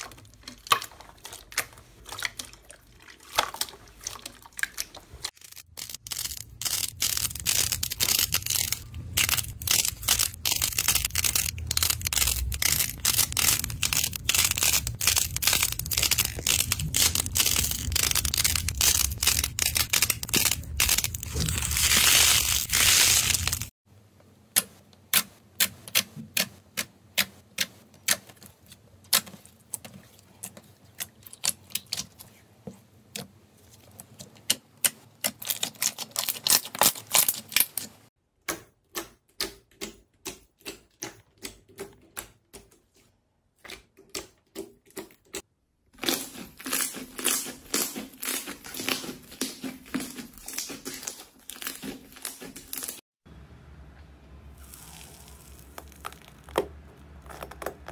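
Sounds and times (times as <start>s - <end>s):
crunchy slime clicking and crackling: 4.4s - 23.7s, 34.4s - 37.9s, 46.0s - 53.0s, 54.6s - 57.9s.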